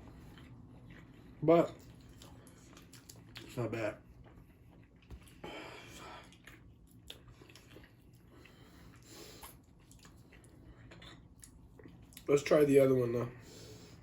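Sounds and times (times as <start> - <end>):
person chewing: 0.0 - 12.3.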